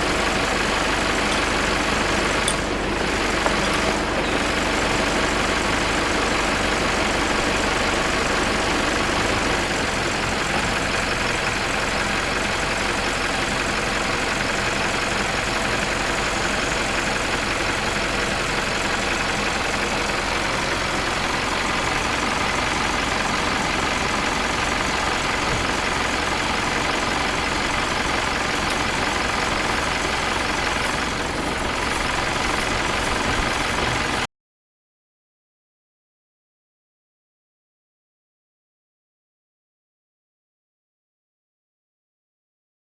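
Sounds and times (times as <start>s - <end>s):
diesel truck engine running: 0.0s - 34.3s.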